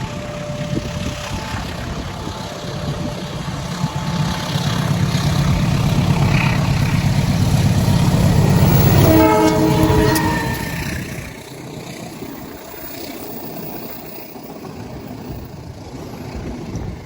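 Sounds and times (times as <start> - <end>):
train horn: 0.0 - 11.5
diesel locomotive engine rumble: 0.0 - 17.0.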